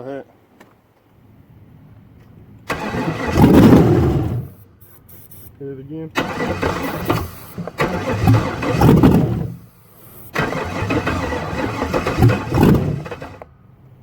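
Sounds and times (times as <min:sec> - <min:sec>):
engine cranking and firing: 0:02.7 - 0:05.5, 0:06.2 - 0:13.6.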